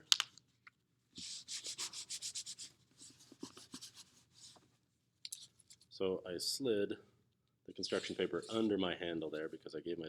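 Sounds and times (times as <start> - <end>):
hand rubbing paper: 1.2 - 4.6.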